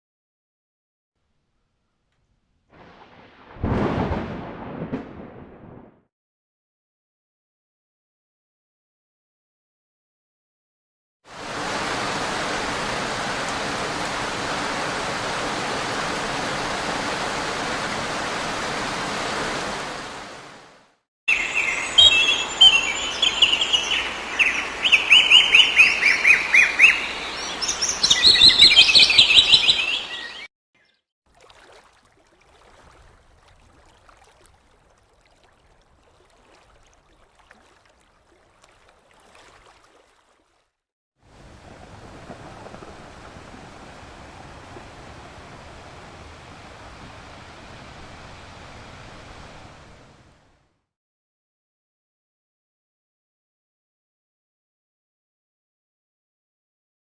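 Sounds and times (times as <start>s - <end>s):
steady hiss: 21.3s - 30.3s
birds chirping and trilling: 21.3s - 31.0s.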